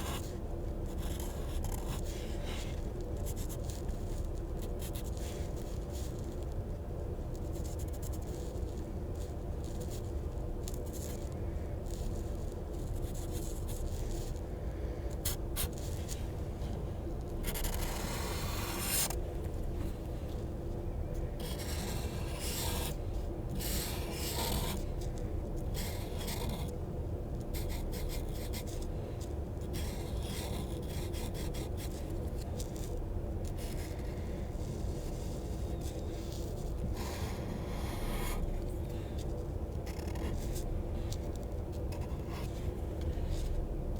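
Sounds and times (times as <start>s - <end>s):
low background hum: 0.0s - 43.9s
pencil scribbling on paper: 21.4s - 23.0s, 23.6s - 24.8s.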